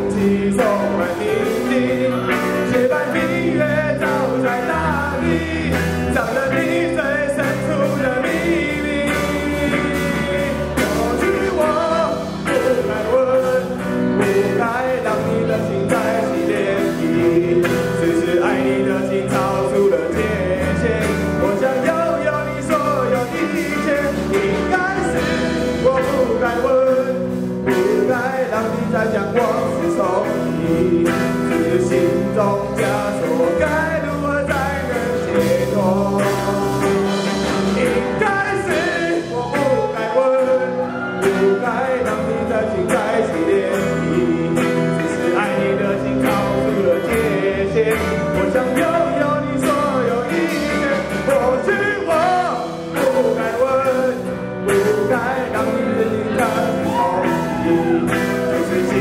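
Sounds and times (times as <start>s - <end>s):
live band playing rock ballad: 0.0s - 59.0s.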